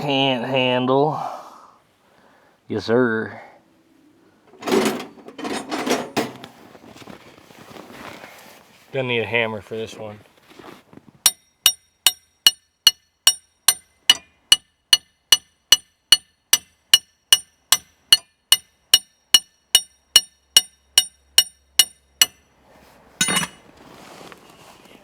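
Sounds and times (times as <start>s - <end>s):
metal clatter: 4.5s - 6.6s, 23.2s - 23.7s
hammer striking metal: 11.3s - 22.5s, 23.2s - 23.6s.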